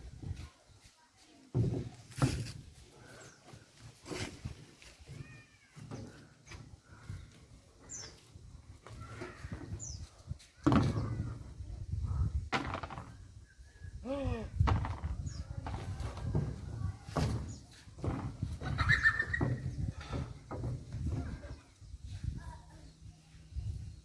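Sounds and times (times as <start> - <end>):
handling knocks and rustling: 1.4 - 7.2, 14.6 - 22.4.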